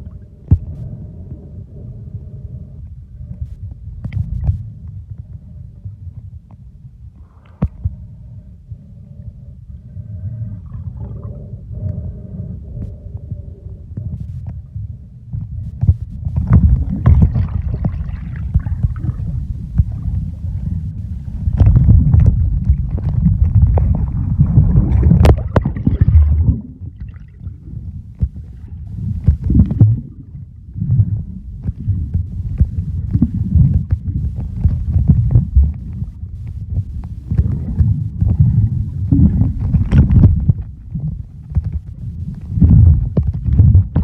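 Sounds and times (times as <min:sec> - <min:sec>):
underwater water sloshing: 0:15.4 - 0:44.0.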